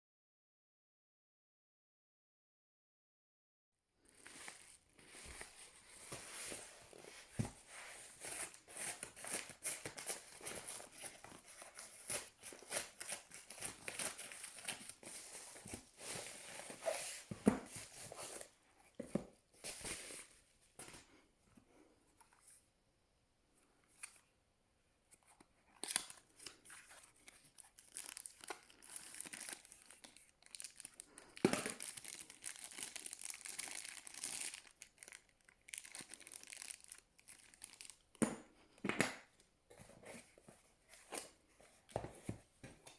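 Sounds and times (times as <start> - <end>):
packaging crinkling and tearing: 25.7 - 38.2.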